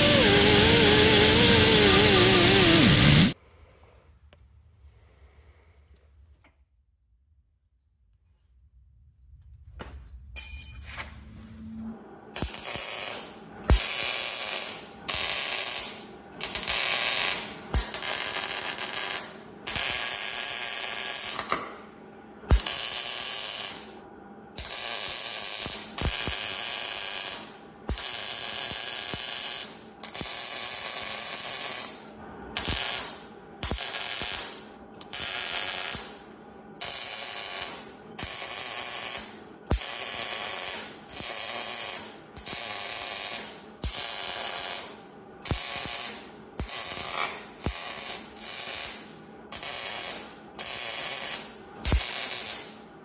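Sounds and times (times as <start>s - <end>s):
exhaust air hiss: 0.0s - 3.4s
pneumatic air ratchet bursts: 0.0s - 3.4s.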